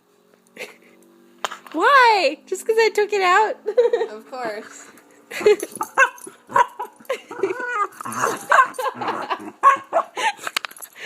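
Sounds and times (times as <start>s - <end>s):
dogs making pitched noises: 5.7s - 10.3s.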